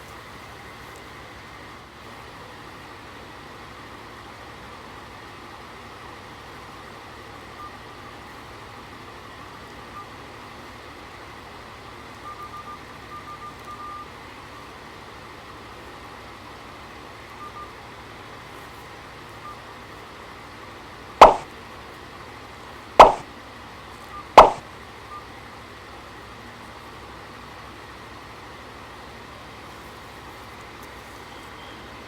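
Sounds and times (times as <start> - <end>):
loud sudden pops: 21.2 - 21.5, 23.0 - 23.2, 24.4 - 24.6.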